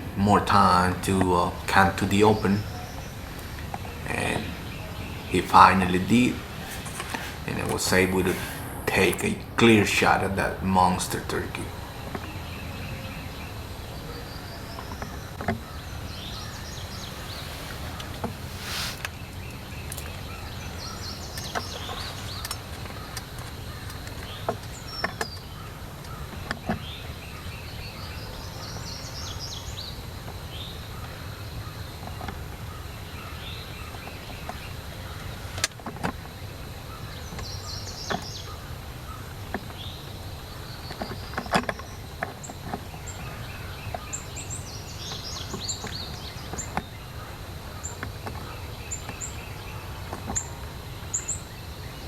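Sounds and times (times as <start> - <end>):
low outdoor rumble: 0.0 - 25.0
songbirds singing: 0.0 - 52.0.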